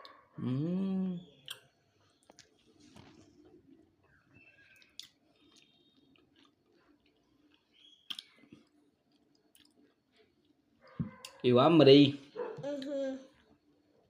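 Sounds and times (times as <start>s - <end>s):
soft chewing and mouth sounds: 1.2s - 11.5s, 12.2s - 14.0s
small mouth clicks: 1.4s - 2.5s, 4.7s - 6.6s, 7.5s - 8.7s.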